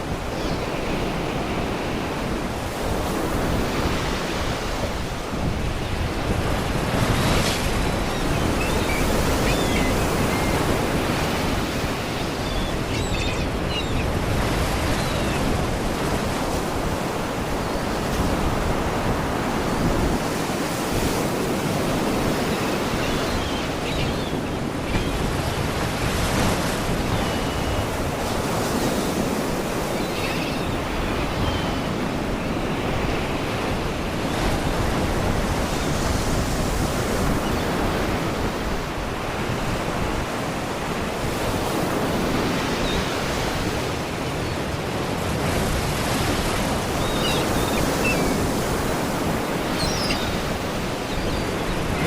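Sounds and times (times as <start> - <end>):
faint seagull cries: 46.6 - 52.0.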